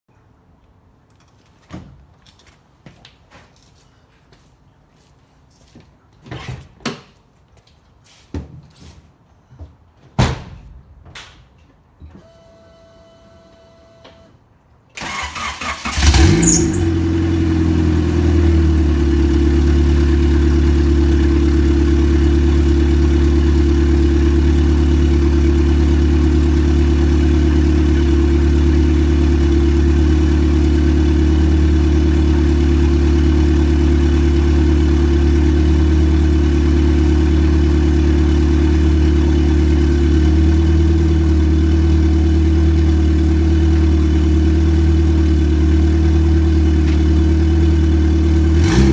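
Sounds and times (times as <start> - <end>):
car engine starting and idling: 15.0 - 48.9.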